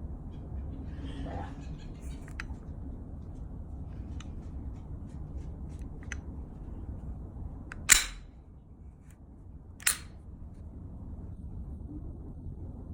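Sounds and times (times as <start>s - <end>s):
steady low rumble: 0.0s - 12.9s
pistol metallic clicks: 7.7s - 8.3s, 9.8s - 10.1s.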